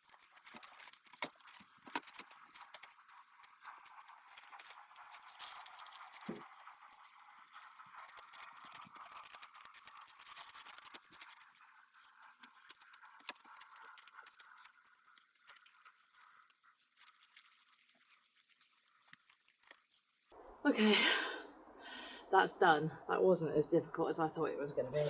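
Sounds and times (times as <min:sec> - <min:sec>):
scraping and clicking: 0:00.0 - 0:20.3.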